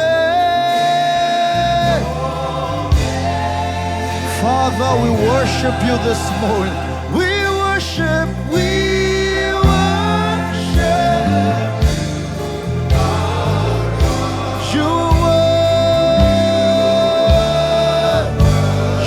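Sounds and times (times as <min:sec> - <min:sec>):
bass guitar: 0:00.0 - 0:19.0
drums: 0:00.0 - 0:19.0
keyboard: 0:00.0 - 0:19.0
people singing: 0:00.0 - 0:19.0.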